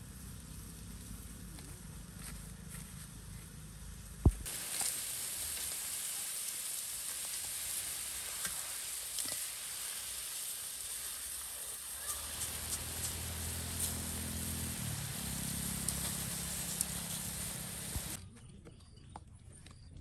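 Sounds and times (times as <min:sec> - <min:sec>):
meat sizzling in hot fat: 0:04.4 - 0:18.2.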